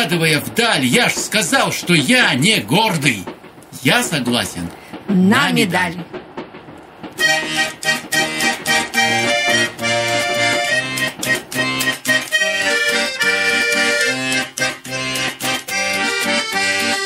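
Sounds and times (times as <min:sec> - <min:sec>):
accordion bass chords: 0:07.2 - 0:17.0
button accordion melody: 0:07.2 - 0:17.0.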